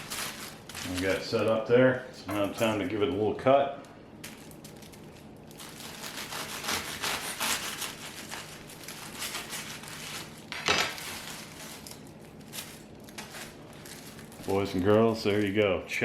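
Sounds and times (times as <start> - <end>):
knife sawing through wrapped sandwich: 5.6 - 10.4.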